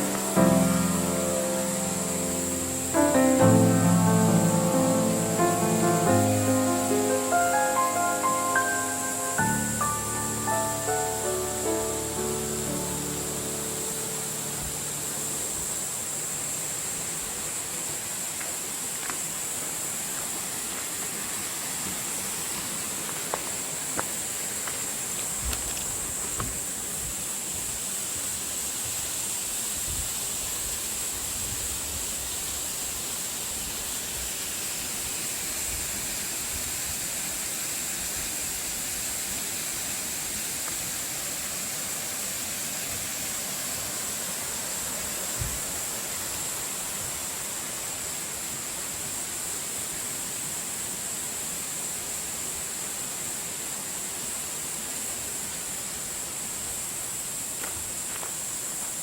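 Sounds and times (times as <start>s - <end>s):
high-pitched whine: 0.0s - 17.7s
stream rushing: 0.0s - 25.4s.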